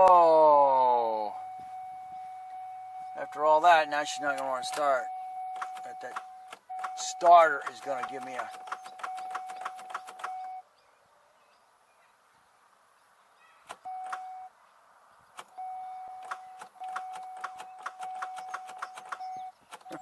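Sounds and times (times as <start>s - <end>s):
steady electronic dash tone: 1.0s - 10.7s, 15.5s - 20.0s
car starter rapid clicking: 4.3s - 10.4s, 16.2s - 20.0s.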